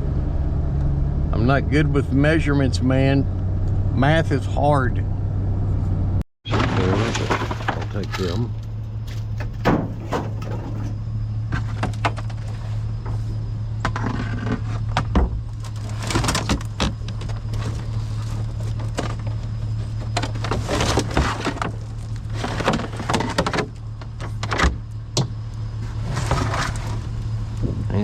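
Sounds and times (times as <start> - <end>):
vehicle engine humming: 0.0 - 6.2, 6.8 - 28.0
rustling of things handled: 14.1 - 24.4.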